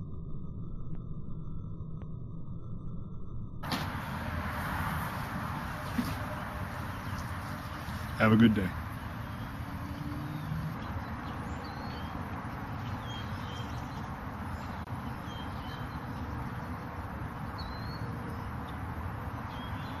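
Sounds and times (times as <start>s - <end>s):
birds chirping: 3.6s - 20.0s.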